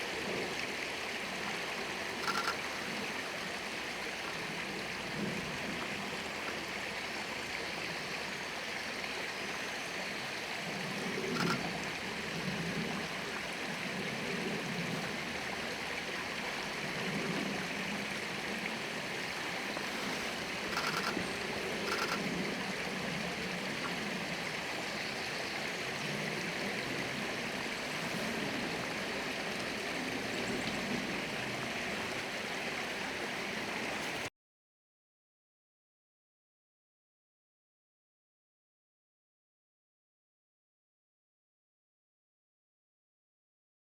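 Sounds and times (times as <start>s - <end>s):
mountain stream running: 0.0s - 34.3s.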